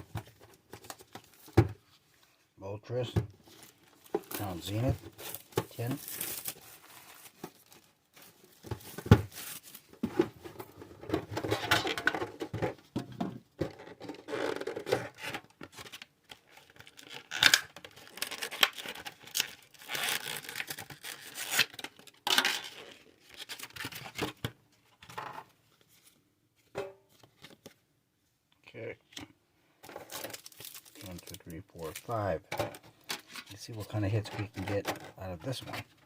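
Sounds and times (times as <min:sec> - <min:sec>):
plastic wrapping tearing and crinkling: 0:03.5 - 0:09.9, 0:15.8 - 0:24.2, 0:29.9 - 0:32.4.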